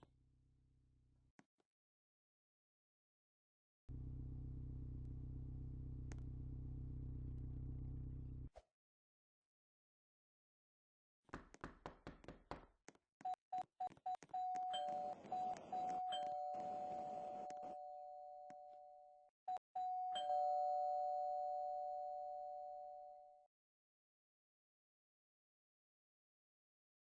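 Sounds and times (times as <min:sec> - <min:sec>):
two-tone doorbell chime: 0:19.8 - 0:23.4.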